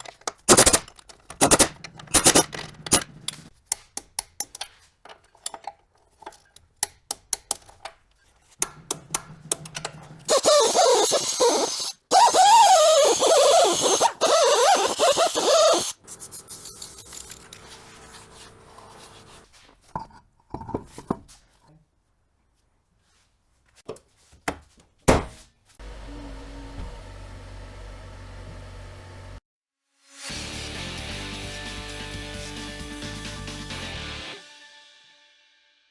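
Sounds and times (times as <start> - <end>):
metal clicks and clinks: 0.0 - 8.0
power tool running: 0.5 - 0.8, 1.4 - 3.0, 10.3 - 19.4, 25.8 - 29.4.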